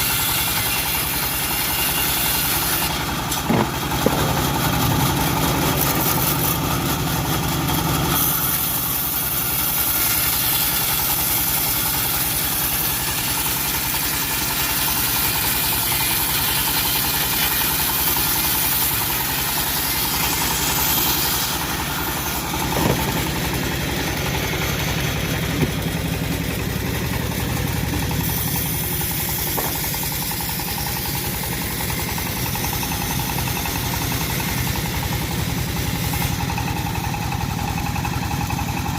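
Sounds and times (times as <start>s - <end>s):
bandsaw mill engine running: 0.0s - 38.9s
short knocks: 22.6s - 23.3s.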